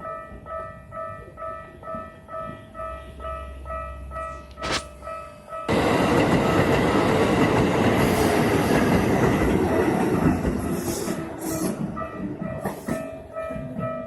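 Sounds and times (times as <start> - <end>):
train wheels rushing and clattering: 5.7 - 14.0.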